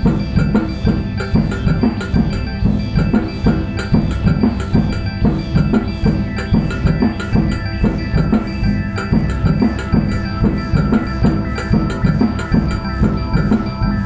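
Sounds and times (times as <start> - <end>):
fast percussion beat: 0.0 - 14.0
held synth tones: 0.0 - 14.0.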